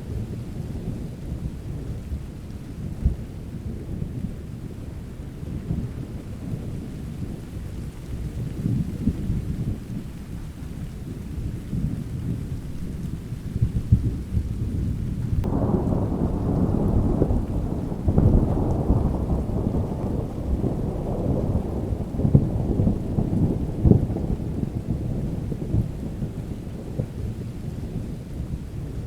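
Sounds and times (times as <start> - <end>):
steady rain: 0.0 - 29.0
thunder rumbling: 11.1 - 29.0
crackling thunder peal: 11.7 - 29.0.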